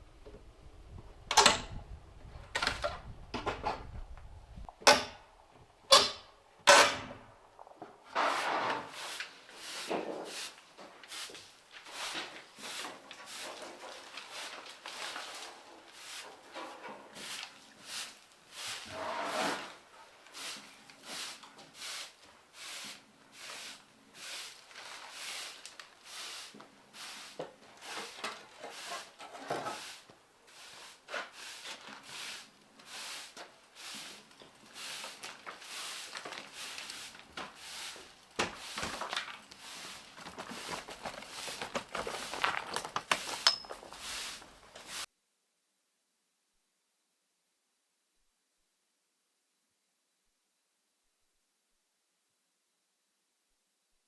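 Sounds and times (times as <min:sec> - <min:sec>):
hand tool scraping on a surface: 0:05.9 - 0:07.2, 0:08.1 - 0:45.1.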